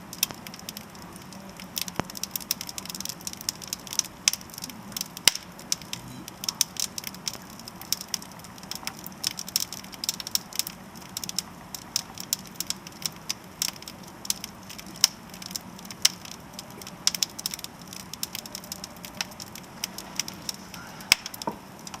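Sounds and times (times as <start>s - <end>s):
wood fire crackling and popping: 0.0s - 22.0s.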